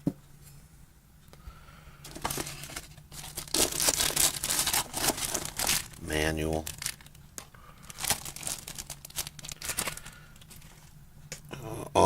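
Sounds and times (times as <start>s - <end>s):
packaging crinkling and rustling: 2.0s - 11.0s.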